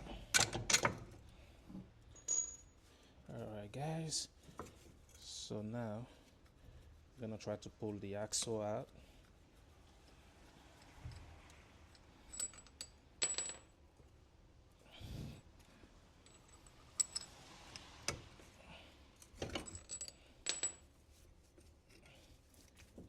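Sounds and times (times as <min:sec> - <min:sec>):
metal clinks and knocks: 0:02.1 - 0:02.8, 0:11.9 - 0:13.7, 0:16.2 - 0:17.9, 0:19.2 - 0:20.9.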